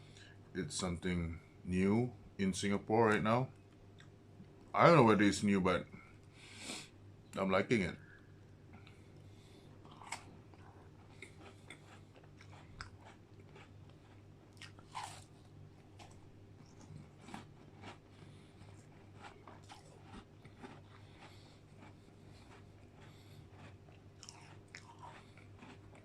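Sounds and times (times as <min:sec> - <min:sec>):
faint low hum: 0:00.0 - 0:26.0
chewing and crunching biscuits: 0:08.7 - 0:26.0.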